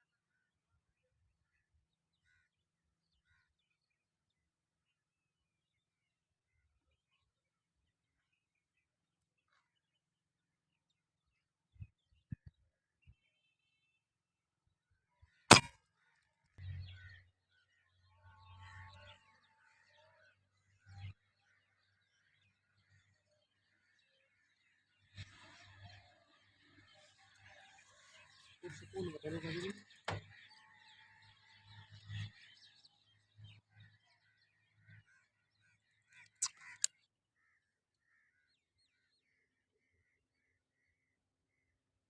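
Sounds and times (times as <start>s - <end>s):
sharp click: 15.5s - 15.7s
faint birds chirping: 16.6s - 42.0s.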